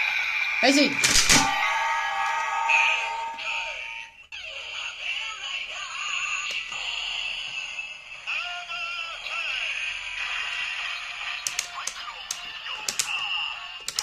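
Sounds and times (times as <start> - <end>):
tinny toy music: 0.0 - 5.7
toy synthesized voice: 3.4 - 14.0
sharp plastic clicks: 11.4 - 13.2.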